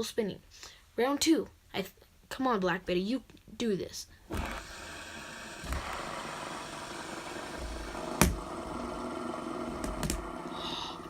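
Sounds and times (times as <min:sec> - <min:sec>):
fidget spinners whirring: 0:04.4 - 0:11.0.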